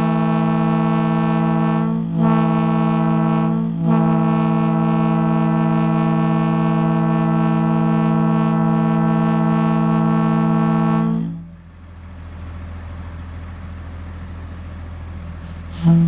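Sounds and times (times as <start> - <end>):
train air horn chord: 0.0 - 11.7, 15.4 - 16.0.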